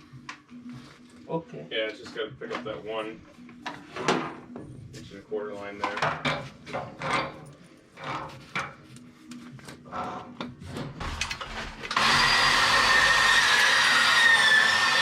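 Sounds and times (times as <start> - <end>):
power tool whining: 11.8 - 15.0.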